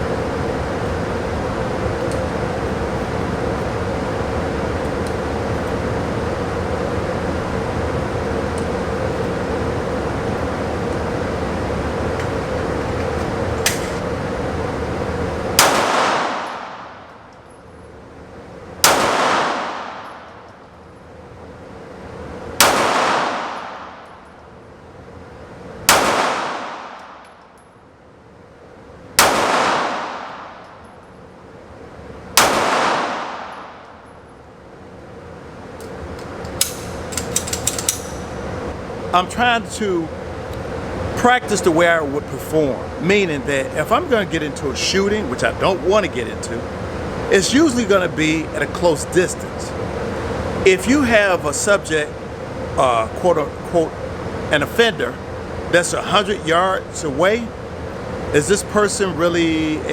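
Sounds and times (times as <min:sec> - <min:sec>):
steady background hum: 0:00.0 - 0:59.9
pistol shots: 0:15.6 - 0:17.1, 0:18.8 - 0:20.3, 0:22.6 - 0:24.2, 0:25.9 - 0:27.3, 0:29.2 - 0:30.8, 0:32.4 - 0:33.9
light metallic handling clicks: 0:35.8 - 0:38.2.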